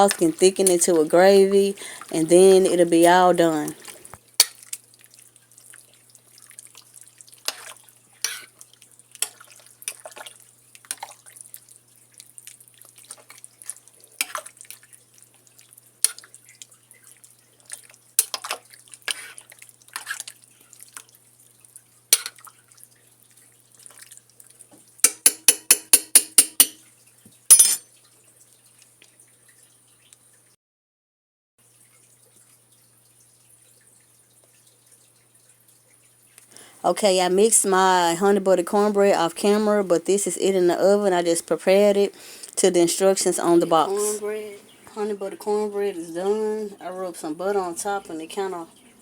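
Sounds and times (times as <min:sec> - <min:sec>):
spoon stirring thick food: 0:00.0 - 0:04.2
spoon tapping pot rim: 0:25.0 - 0:26.9.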